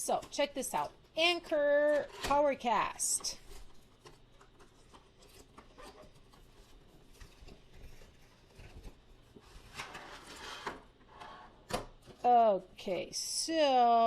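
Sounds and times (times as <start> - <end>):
cardboard packaging rustling: 0.1 - 11.0.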